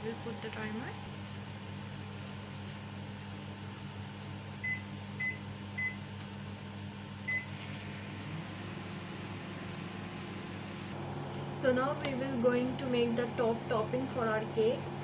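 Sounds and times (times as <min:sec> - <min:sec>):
microwave oven humming: 0:00.0 - 0:15.0
microwave keypad beeping: 0:04.6 - 0:06.0, 0:07.3 - 0:07.6.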